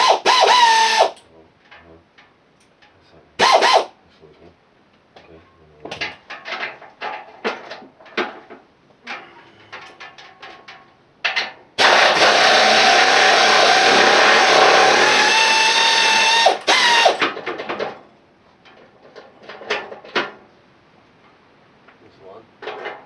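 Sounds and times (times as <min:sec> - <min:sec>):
pneumatic air tool running: 0:00.0 - 0:01.2, 0:03.4 - 0:03.9, 0:11.8 - 0:17.2.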